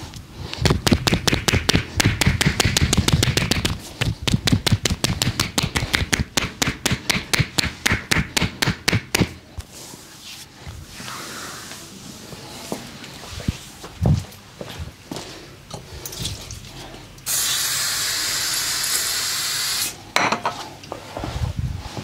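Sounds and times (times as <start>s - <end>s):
percussive massage strikes: 0.6s - 9.4s.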